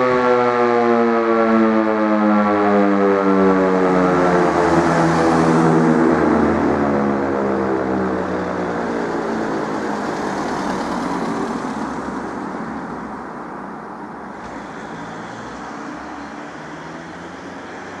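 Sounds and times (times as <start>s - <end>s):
siren spinning down: 0.0s - 11.4s
traffic-like rumble: 0.0s - 18.0s.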